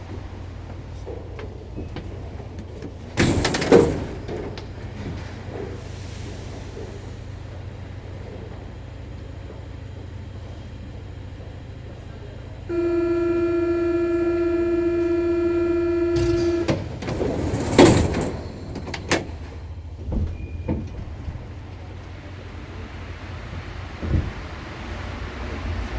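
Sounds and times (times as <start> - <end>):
train car low hum: 0.0 - 25.9
door-closing warning buzzer: 12.7 - 17.1.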